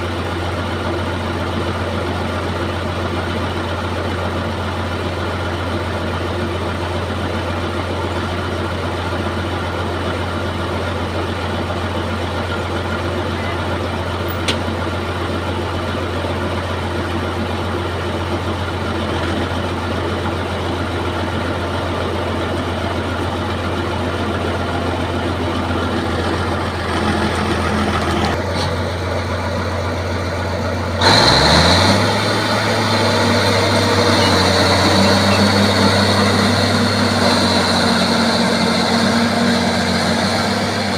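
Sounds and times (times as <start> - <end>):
bulldozer diesel engine revving: 9.0 - 40.9.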